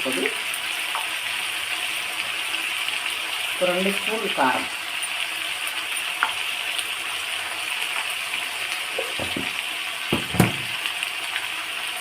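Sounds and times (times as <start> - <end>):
meat sizzling in oil: 0.0 - 12.0
knock: 9.2 - 10.7.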